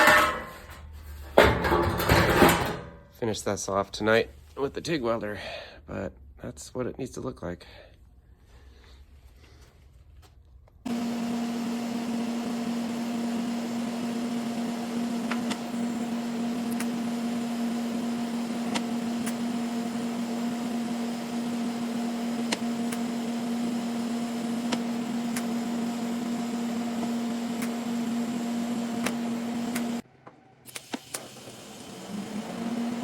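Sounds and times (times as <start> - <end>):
machine humming: 10.9 - 30.0.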